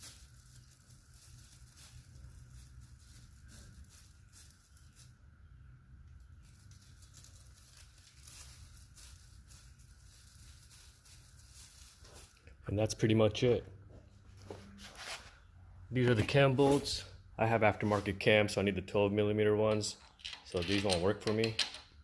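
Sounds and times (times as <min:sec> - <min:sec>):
faint rustling of handling: 0:06.2 - 0:12.6.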